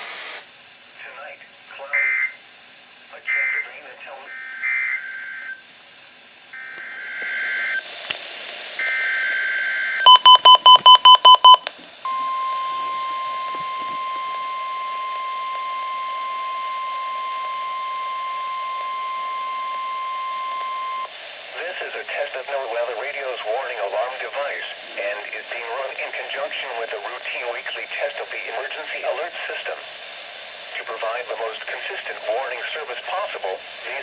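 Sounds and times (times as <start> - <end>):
steady warning alarm tone: 8.8 - 21.1
harsh electronic beeps: 10.1 - 21.1.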